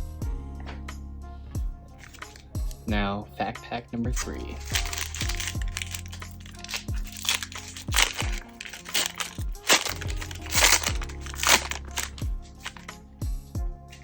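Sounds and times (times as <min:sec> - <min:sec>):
background music with thudding bass: 0:00.0 - 0:14.0
card pack wrapper crinkling: 0:02.0 - 0:02.5, 0:04.2 - 0:12.9.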